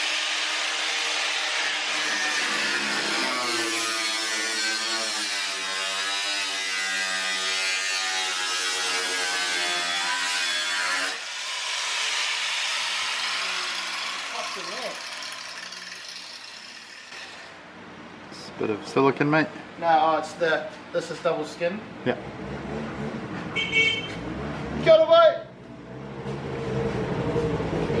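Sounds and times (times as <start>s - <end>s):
angle grinder cutting metal: 0.0s - 17.6s.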